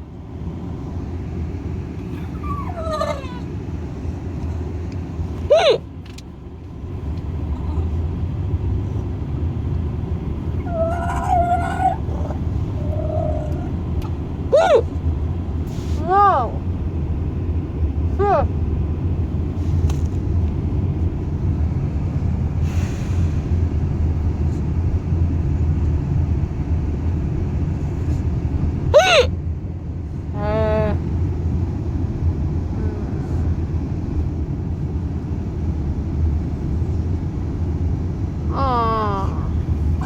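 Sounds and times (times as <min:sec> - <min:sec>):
car road rumble: 0:00.0 - 0:40.0
high-pitched cries: 0:02.1 - 0:03.5, 0:05.5 - 0:05.8, 0:10.6 - 0:13.8, 0:14.5 - 0:14.9, 0:16.0 - 0:16.6, 0:29.0 - 0:29.3.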